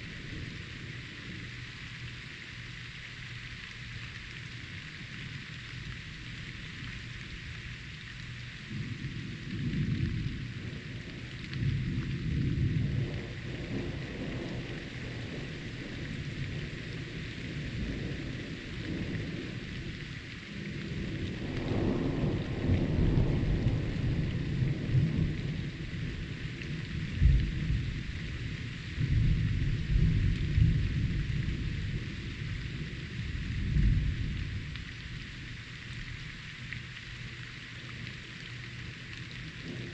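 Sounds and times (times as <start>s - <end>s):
heavy rain hissing: 0.0s - 39.9s
thunder rumbling: 8.7s - 34.7s.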